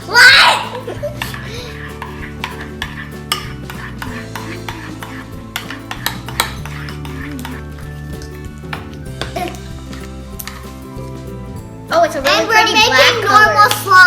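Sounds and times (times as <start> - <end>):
background music: 0.0 - 14.0
spoon stirring slime in a bowl: 1.1 - 10.9
spoon clinking against bowl: 2.0 - 9.0.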